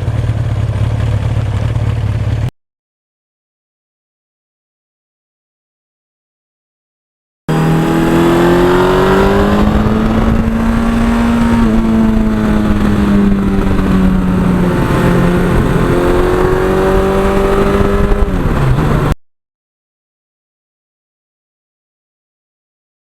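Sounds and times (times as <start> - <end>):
motorcycle engine accelerating: 0.0 - 2.5, 7.5 - 19.2.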